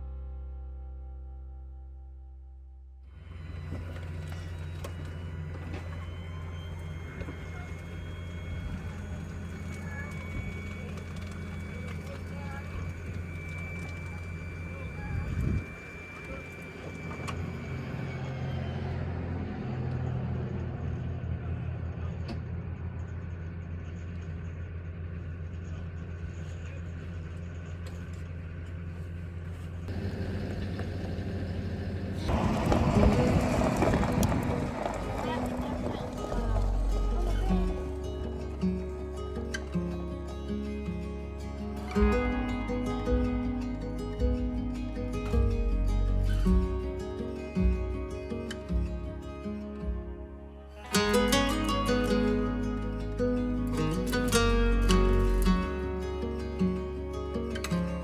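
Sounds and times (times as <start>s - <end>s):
vehicle rumble: 0.0s - 58.0s
thin faint whine: 3.1s - 20.0s, 27.8s - 39.5s
road noise: 3.1s - 58.0s.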